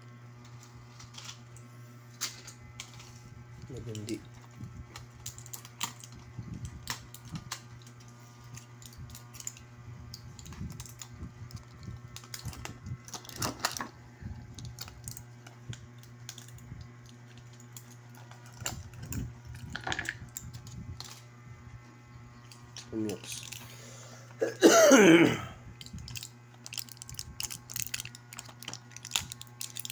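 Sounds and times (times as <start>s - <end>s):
steady low hum: 0.0s - 29.9s
small objects clicking and tapping: 14.6s - 21.2s, 25.8s - 29.9s.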